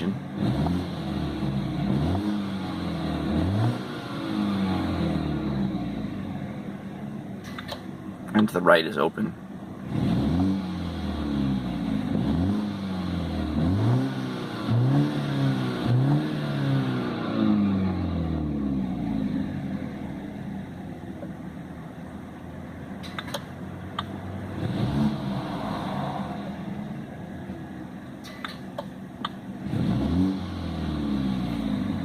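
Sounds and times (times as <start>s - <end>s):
car engine revving: 0.0s - 8.6s, 9.7s - 32.0s
sharp clicks: 23.0s - 24.2s, 28.2s - 29.4s.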